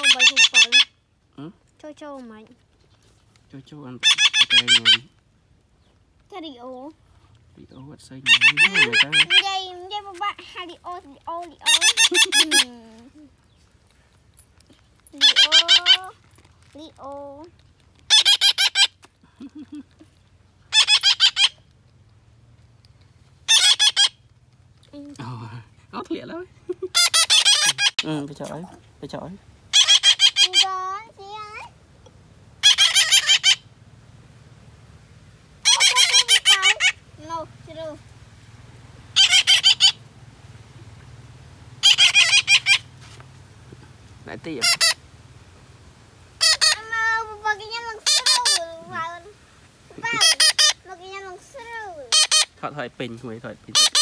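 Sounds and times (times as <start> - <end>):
parrots squawking: 0.0 - 1.0, 4.0 - 5.1, 8.2 - 10.8, 11.4 - 13.1, 15.2 - 16.2, 18.1 - 19.0, 20.7 - 21.6, 23.4 - 24.2, 26.3 - 28.8, 29.7 - 31.7, 32.6 - 33.8, 35.6 - 54.0.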